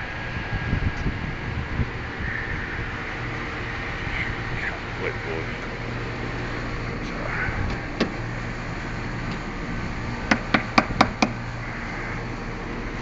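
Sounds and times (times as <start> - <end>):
low hum of running machinery: 0.0 - 13.0
sharp knocks: 10.3 - 11.4.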